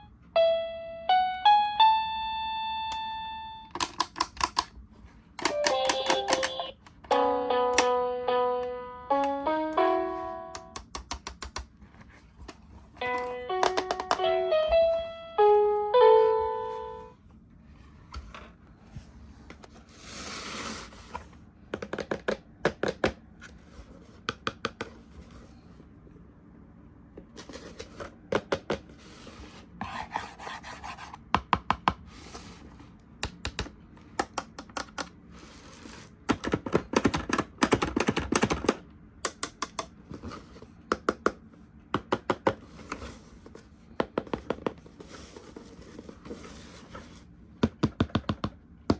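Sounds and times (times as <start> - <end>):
toy electronic tune: 0.0 - 3.7, 5.4 - 10.7, 13.0 - 17.1
plastic toys clicking and tapping: 3.7 - 4.7, 5.4 - 6.7, 13.6 - 14.3, 33.2 - 35.2, 36.3 - 40.0.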